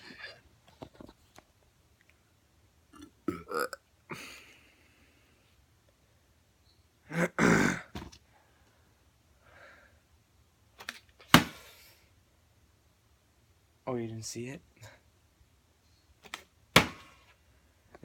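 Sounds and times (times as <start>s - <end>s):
burp: 2.9s - 4.2s, 7.1s - 8.1s
plastic bottle landing knock: 16.8s - 17.1s.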